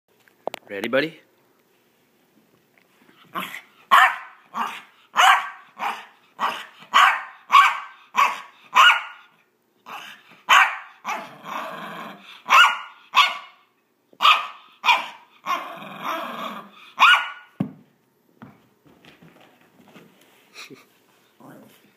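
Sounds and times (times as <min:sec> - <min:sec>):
small dog barking: 0:03.4 - 0:09.3, 0:09.9 - 0:11.3, 0:12.5 - 0:13.6, 0:14.2 - 0:15.6, 0:17.0 - 0:17.5
dog growling: 0:11.1 - 0:12.4, 0:15.4 - 0:16.9, 0:21.4 - 0:21.8.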